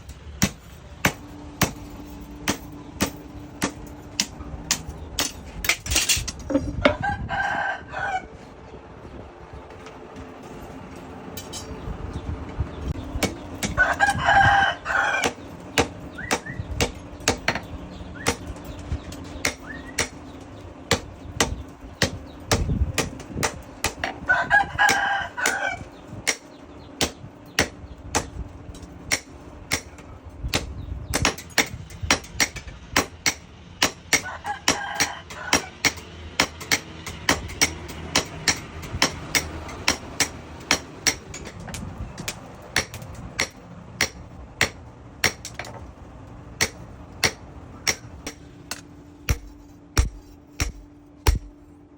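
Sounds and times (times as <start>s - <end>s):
hammer striking metal: 0.0s - 7.0s, 11.3s - 11.8s, 15.2s - 24.2s, 26.2s - 45.8s, 46.6s - 51.6s
rooster crowing: 6.8s - 8.4s, 13.8s - 15.4s, 24.2s - 25.9s, 34.2s - 35.8s.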